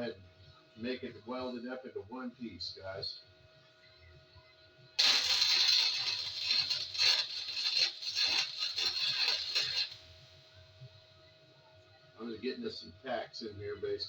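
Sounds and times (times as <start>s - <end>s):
electric welder crackling: 5.0s - 10.2s.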